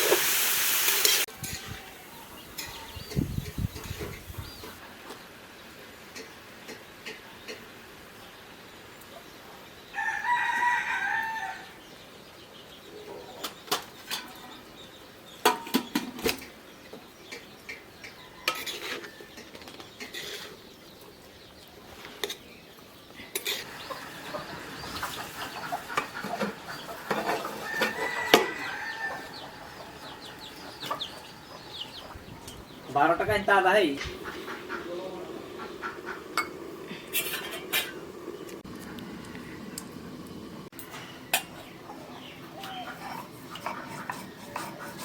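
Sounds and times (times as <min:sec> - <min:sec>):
rooster crowing: 0:09.9 - 0:11.8, 0:27.1 - 0:32.0.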